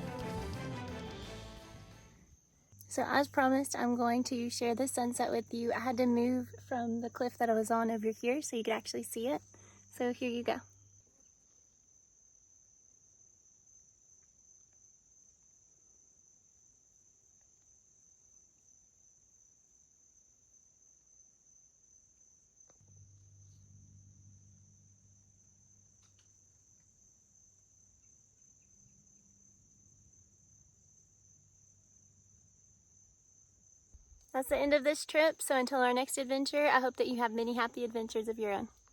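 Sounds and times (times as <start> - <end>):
insects chirring: 2.0 - 38.9.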